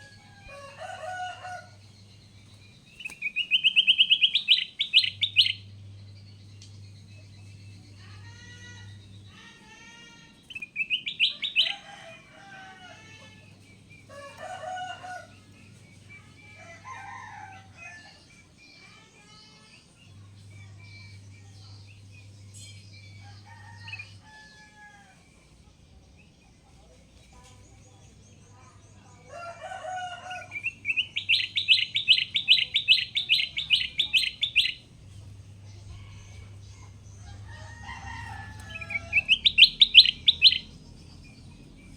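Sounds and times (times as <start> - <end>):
bird singing: 0.0 - 24.9, 26.0 - 41.9
bulbul calling: 3.0 - 5.7, 10.5 - 11.8, 30.5 - 34.9, 38.7 - 40.8.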